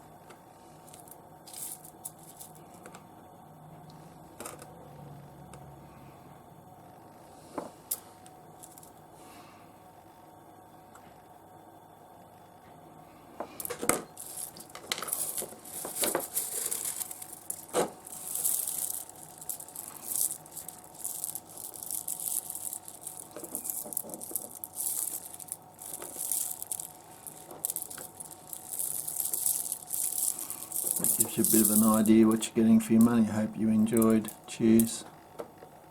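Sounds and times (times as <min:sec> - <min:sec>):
stones clinking and rattling: 0:00.9 - 0:02.8, 0:08.6 - 0:09.0, 0:13.6 - 0:32.4, 0:33.8 - 0:35.0.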